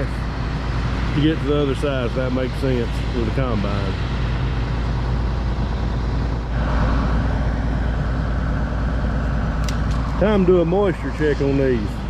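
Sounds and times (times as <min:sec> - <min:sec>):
diesel engine running: 0:00.0 - 0:12.0
higher rushing noise: 0:06.5 - 0:12.0.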